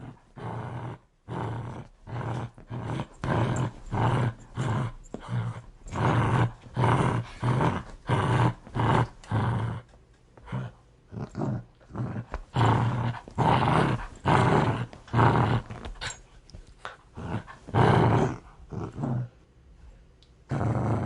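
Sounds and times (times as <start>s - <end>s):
dog growling: 0.0s - 16.2s, 16.8s - 19.4s, 20.5s - 21.0s.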